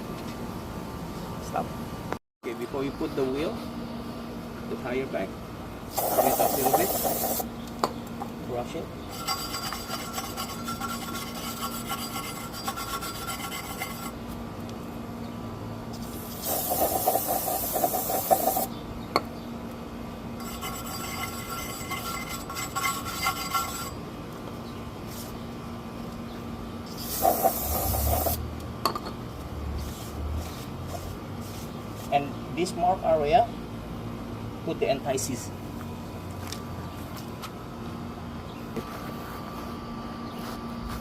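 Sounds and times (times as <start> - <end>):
brush scrubbing metal: 6.0 - 7.4, 9.1 - 14.2, 16.1 - 18.6, 20.4 - 24.0, 26.9 - 28.4.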